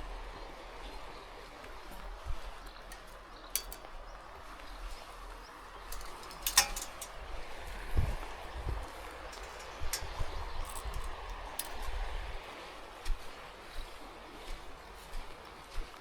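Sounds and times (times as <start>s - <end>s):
sharp ticks: 2.7s - 4.2s.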